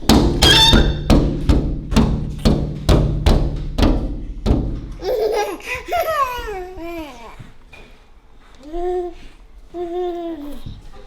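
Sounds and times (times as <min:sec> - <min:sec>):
music with drum beat: 0:00.0 - 0:05.0
baby vocalizing: 0:05.1 - 0:07.5.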